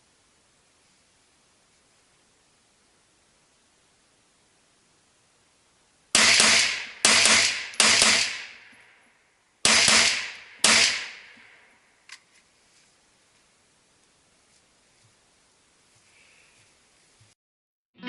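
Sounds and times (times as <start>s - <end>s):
rifle shots with echo: 6.2s - 8.8s, 9.6s - 11.6s.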